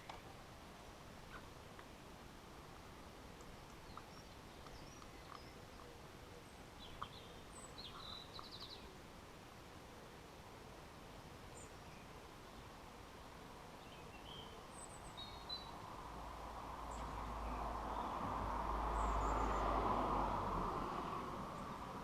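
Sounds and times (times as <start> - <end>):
low outdoor hiss: 0.0 - 22.0
faint bird chirps: 3.6 - 9.0.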